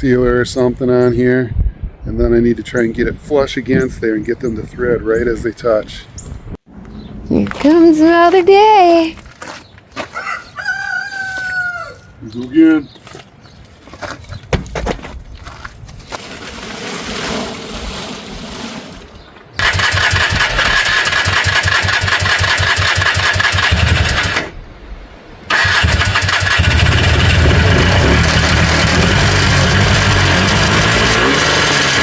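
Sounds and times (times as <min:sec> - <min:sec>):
atv engine cranking and running: 0:19.6 - 0:24.6, 0:25.5 - 0:32.0.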